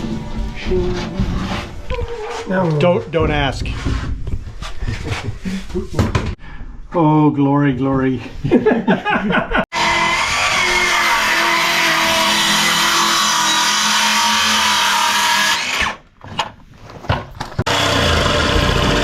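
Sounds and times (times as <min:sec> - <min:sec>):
low-pitched machine running: 0:00.0 - 0:01.9
power tool running: 0:09.7 - 0:16.0, 0:17.7 - 0:19.0.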